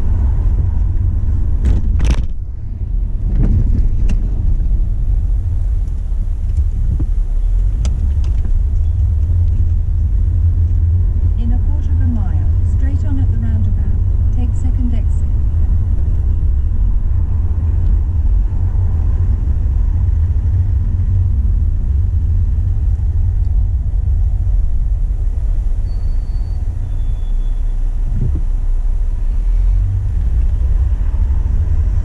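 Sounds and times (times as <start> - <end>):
car interior engine and road noise: 0.0 - 32.0
low thump: 1.6 - 2.4, 28.1 - 28.6.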